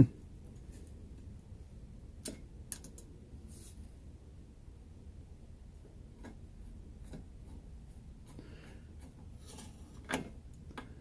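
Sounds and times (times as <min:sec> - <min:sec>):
stove parts clicking and scraping: 0:07.0 - 0:11.0.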